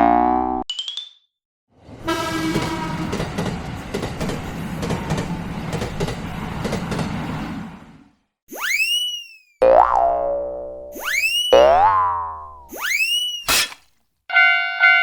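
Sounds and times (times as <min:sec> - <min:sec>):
train rumble with rail clacks: 0:01.8 - 0:08.1
train horn: 0:02.0 - 0:03.2.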